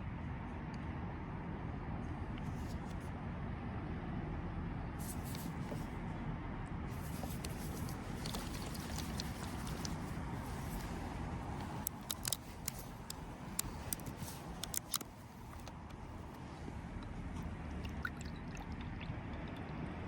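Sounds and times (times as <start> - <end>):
light clicks and ticks: 6.9 - 16.4.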